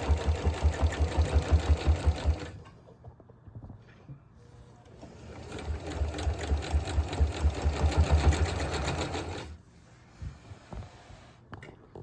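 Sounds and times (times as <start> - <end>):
sewing machine stitching: 0.0 - 2.6, 5.0 - 9.6.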